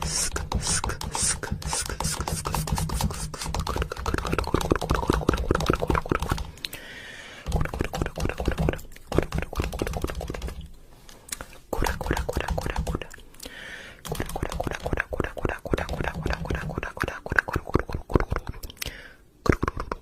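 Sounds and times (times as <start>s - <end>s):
rapid tapping on a shell: 0.4s - 6.5s, 7.5s - 10.6s.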